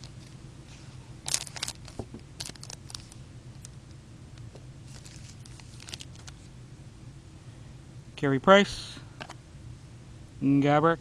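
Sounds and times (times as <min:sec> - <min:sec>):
foil wrapper crinkling and tearing: 0:01.2 - 0:03.7, 0:04.9 - 0:06.5.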